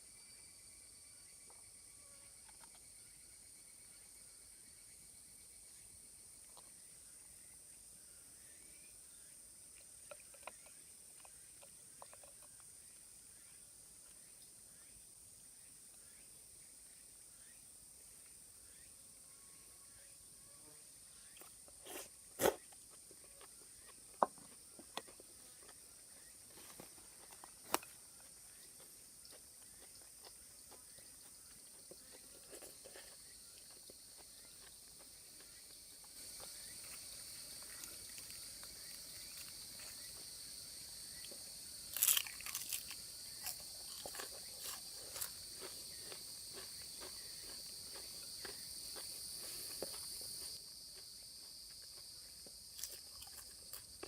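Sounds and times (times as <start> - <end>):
insect chorus: 0.0 - 54.0
person eating crunchy food: 21.4 - 25.8, 41.9 - 51.1, 51.7 - 54.0.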